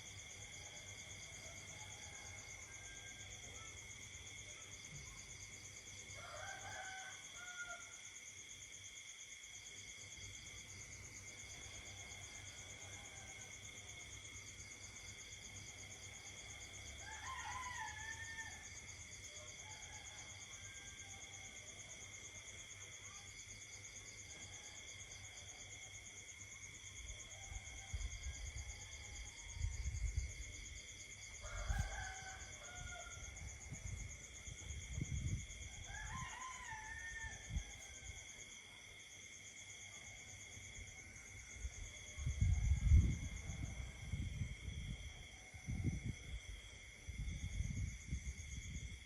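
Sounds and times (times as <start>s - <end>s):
distant rooster crowing: 0.7s - 3.9s, 6.1s - 8.1s, 16.3s - 21.6s, 27.1s - 38.5s.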